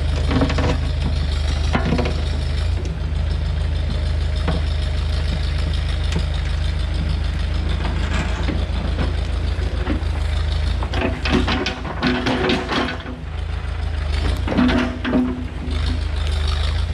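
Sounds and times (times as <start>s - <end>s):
knocks and rattles: 0.0s - 16.1s
diesel engine running: 0.0s - 16.9s.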